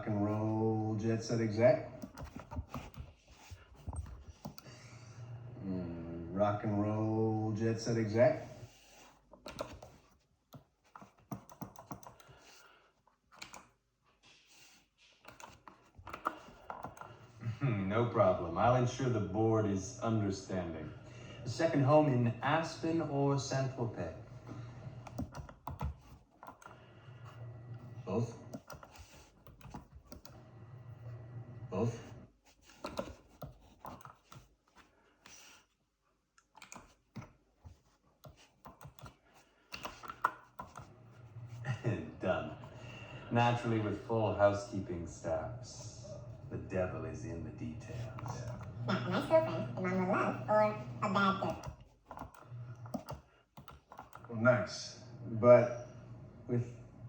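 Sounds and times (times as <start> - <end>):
arcade joystick and buttons clicking: 9.3 - 12.5.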